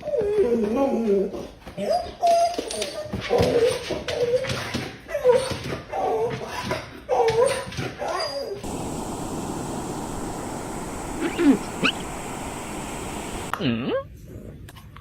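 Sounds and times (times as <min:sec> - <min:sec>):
steady hiss: 0:08.6 - 0:13.5.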